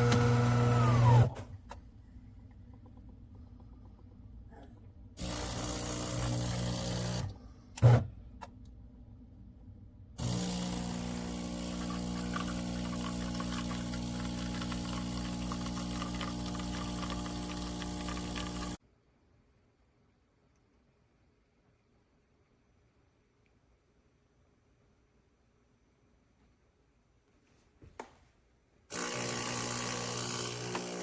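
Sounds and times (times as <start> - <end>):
espresso machine motor running: 0.0 - 1.3, 5.2 - 7.2, 10.2 - 18.8, 28.9 - 31.0.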